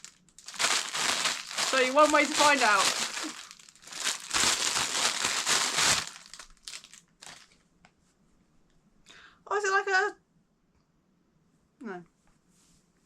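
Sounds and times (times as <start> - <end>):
packaging crinkling and rustling: 0.0 - 7.6.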